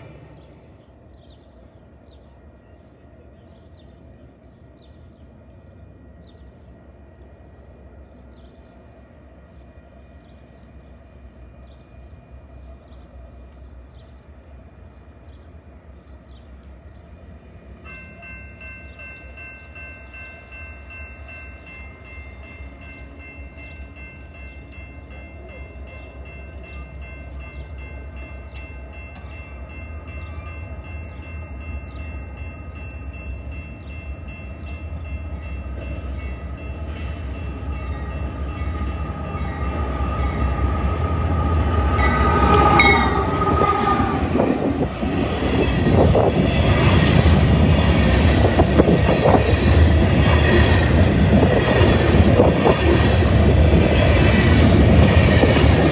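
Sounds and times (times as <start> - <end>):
crossing bell ringing: 17.8 - 55.9
diesel train rumble: 34.5 - 55.9
train horn: 37.8 - 45.2
wheel and rail clatter: 38.1 - 55.9.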